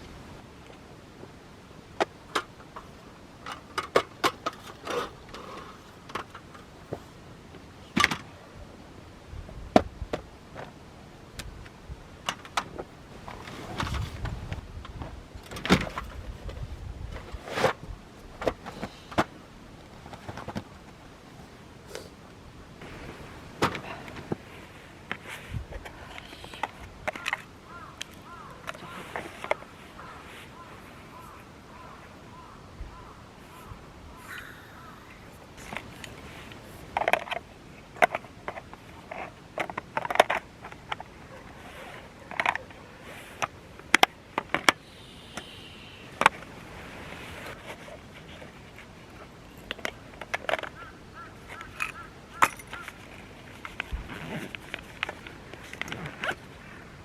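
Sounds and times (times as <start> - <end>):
camping gear clicks and knocks: 0.0 - 8.4, 9.7 - 21.2, 22.8 - 33.1, 35.5 - 44.9, 46.1 - 57.0
soft rustling: 22.8 - 32.0.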